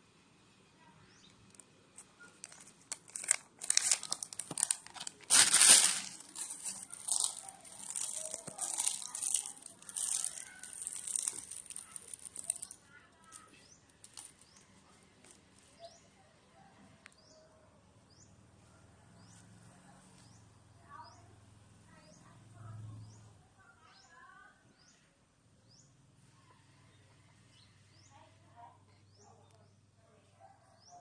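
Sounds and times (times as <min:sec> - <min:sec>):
plastic wrapping crinkling and tearing: 0:02.3 - 0:13.4.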